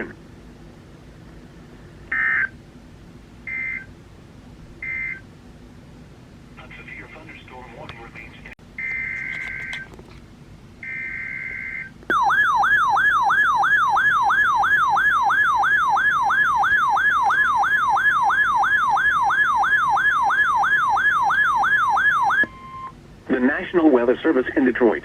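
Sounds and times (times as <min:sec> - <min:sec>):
warbling siren-like alert tone: 0:10.8 - 0:22.9.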